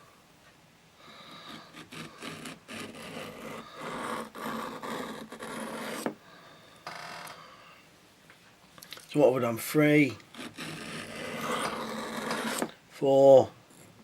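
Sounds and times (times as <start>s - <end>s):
knife scraping on whetstone: 1.3s - 6.2s, 10.3s - 12.8s.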